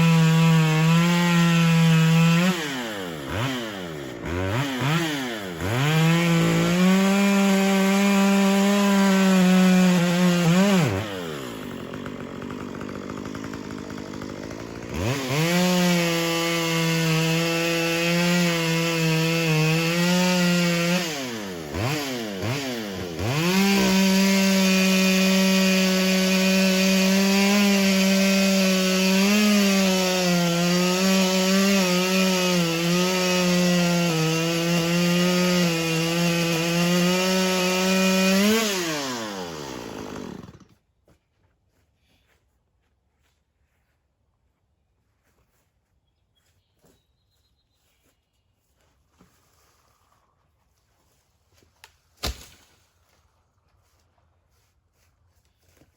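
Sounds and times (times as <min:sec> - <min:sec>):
chainsaw cutting tree: 0:00.0 - 0:40.8, 0:51.8 - 0:52.9.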